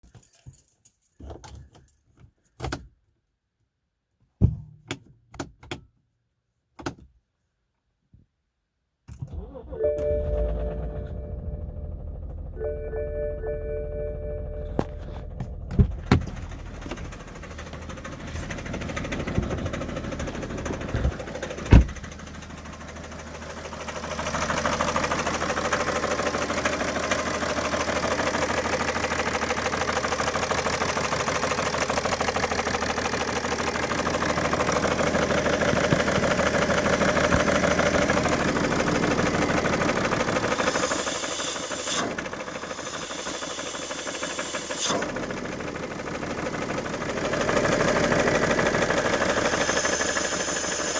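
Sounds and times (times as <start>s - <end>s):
diesel engine running: 9.3s - 50.9s
engine knocking: 14.2s - 50.9s.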